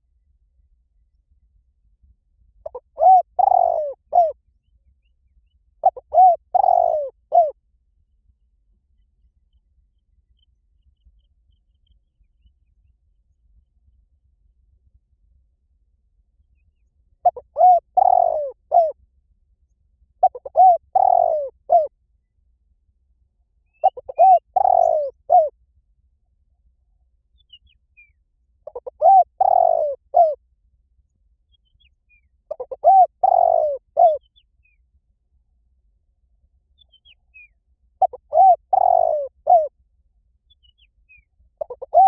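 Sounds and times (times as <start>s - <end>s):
dove cooing: 2.6s - 4.4s, 5.8s - 7.6s, 17.2s - 19.0s, 20.2s - 21.9s, 23.8s - 25.5s, 28.7s - 30.4s, 32.5s - 34.2s, 38.0s - 39.7s, 41.6s - 42.0s.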